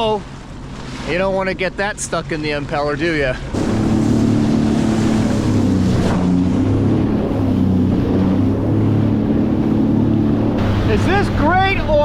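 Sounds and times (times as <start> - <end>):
water rushing past hull: 0.0 - 12.0
watercraft engine running: 0.0 - 12.0
wind on microphone: 3.5 - 11.0.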